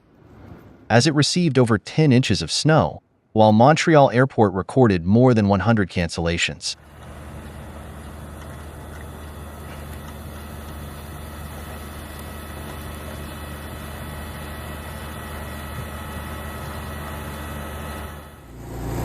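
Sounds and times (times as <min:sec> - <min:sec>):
vehicle engine running: 0:06.8 - 0:19.0.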